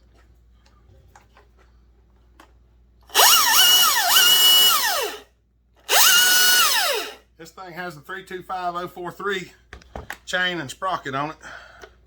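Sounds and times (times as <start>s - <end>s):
electric chainsaw motor whine: 3.1s - 5.2s, 5.9s - 7.2s.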